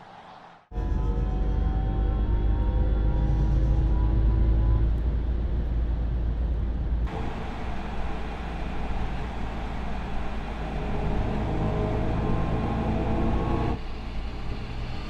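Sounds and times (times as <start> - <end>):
road and tyre rumble: 4.8 - 15.0.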